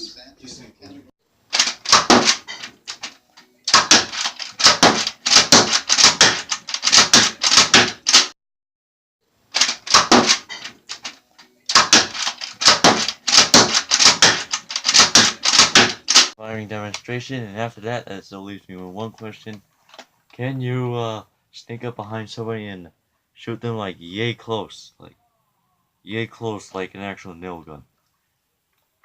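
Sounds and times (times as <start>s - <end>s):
toy blaster plastic clacks: 1.5s - 8.3s, 9.6s - 16.3s.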